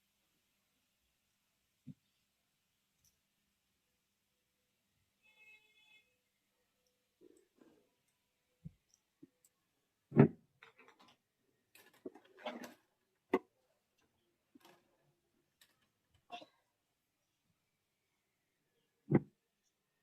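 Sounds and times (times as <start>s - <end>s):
thud: 10.1s - 10.4s.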